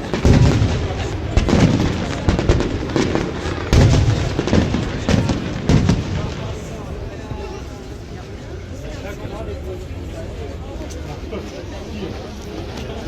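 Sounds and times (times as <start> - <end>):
fireworks bangs: 0.0 - 8.4.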